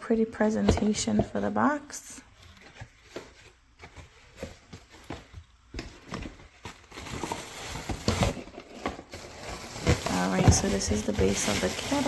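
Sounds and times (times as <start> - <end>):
packing rustling: 2.4 - 12.0.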